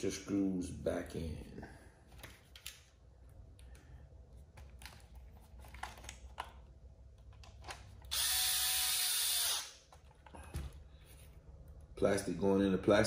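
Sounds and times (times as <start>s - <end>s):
power driver driving a screw: 8.1s - 9.8s.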